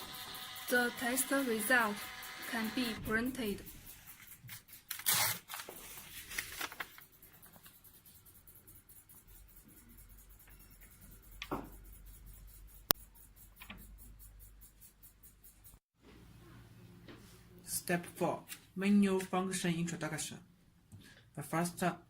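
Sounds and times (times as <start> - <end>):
printer mechanical ticking: 0.0 - 4.5.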